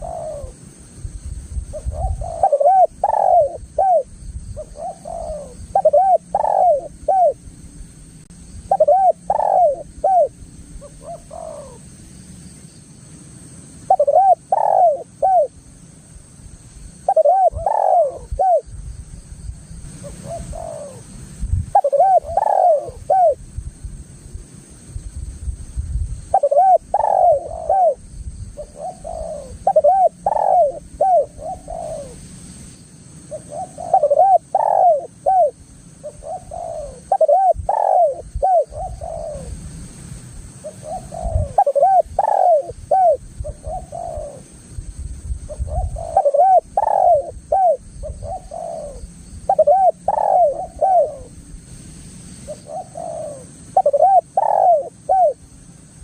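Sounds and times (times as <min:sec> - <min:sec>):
dove cooing: 0:00.0 - 0:00.6, 0:01.7 - 0:07.4, 0:08.7 - 0:11.9, 0:13.9 - 0:15.6, 0:17.0 - 0:18.7, 0:19.9 - 0:23.4, 0:26.3 - 0:32.2, 0:33.3 - 0:39.6, 0:40.6 - 0:44.5, 0:45.5 - 0:51.4, 0:52.5 - 0:55.5.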